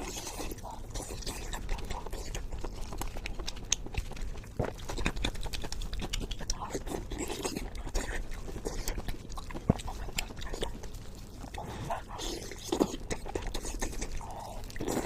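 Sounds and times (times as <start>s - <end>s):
close chewing with mouth smacks: 0.0s - 15.0s.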